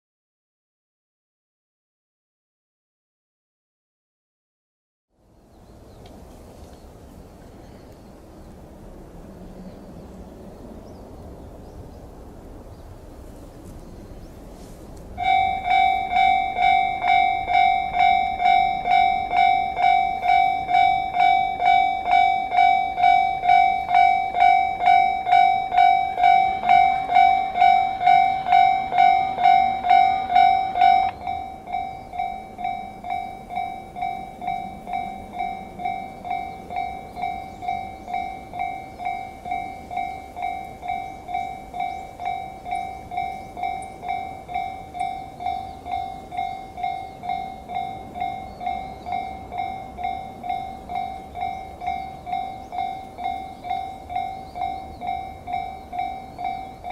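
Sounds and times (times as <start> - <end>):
railroad crossing bell clanging: 14.1 - 56.9.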